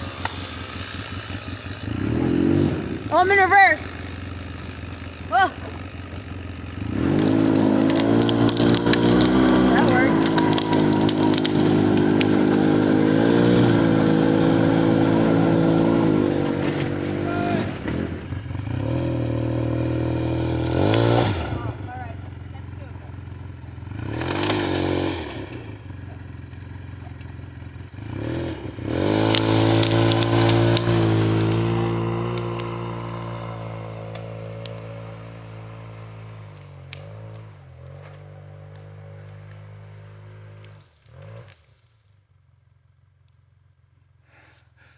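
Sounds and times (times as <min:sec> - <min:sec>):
vehicle engine revving: 0:00.0 - 0:41.9
sharp clicks: 0:07.1 - 0:12.6.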